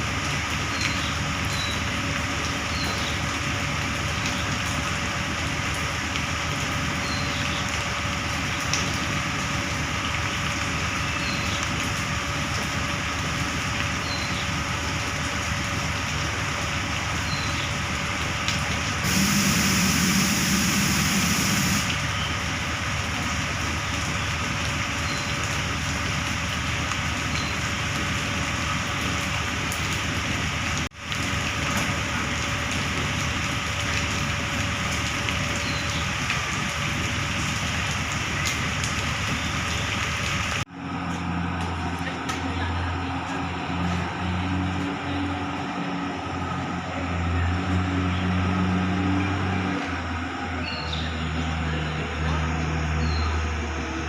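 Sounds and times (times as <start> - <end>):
truck engine running: 0.0 - 30.7, 37.2 - 54.0
loud hiss: 19.0 - 22.0.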